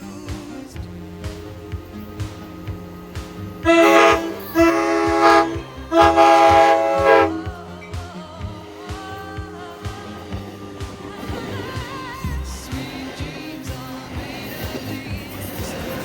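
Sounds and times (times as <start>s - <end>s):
pop music with beat: 0.0s - 16.0s
air horn blasts: 1.3s - 7.9s.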